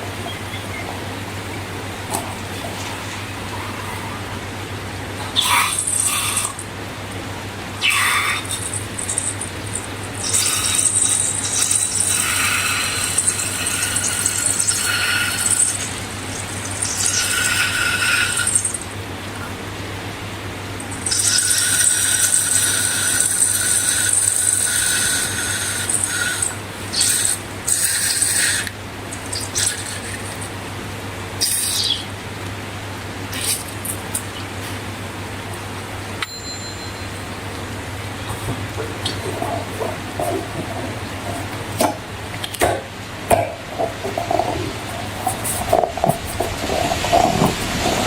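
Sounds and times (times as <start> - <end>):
rubbery squeaking and crackling: 33.3 - 34.8, 38.2 - 42.0, 43.7 - 48.0.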